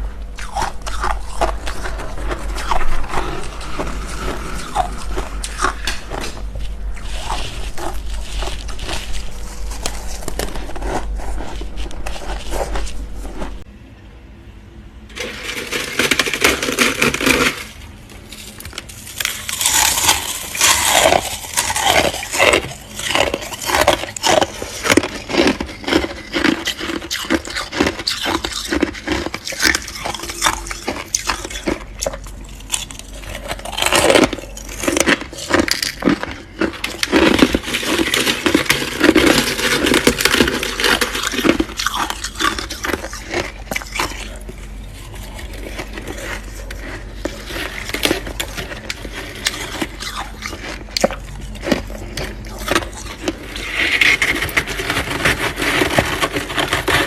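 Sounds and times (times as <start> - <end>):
freezer frost being scraped: 0.0 - 13.7, 15.1 - 57.0.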